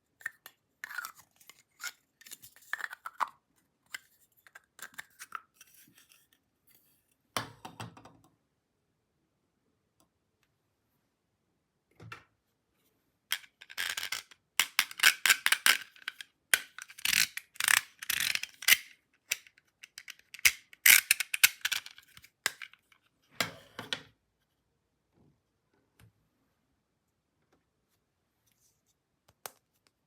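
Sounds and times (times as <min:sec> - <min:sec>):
plastic toy parts clicking: 0:13.3 - 0:23.0.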